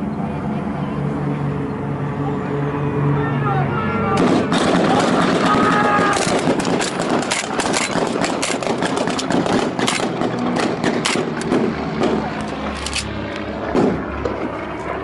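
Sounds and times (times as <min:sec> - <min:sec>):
engine drone: 0:00.0 - 0:15.0
low hum: 0:00.0 - 0:15.0
gunfire cracks: 0:04.2 - 0:12.2.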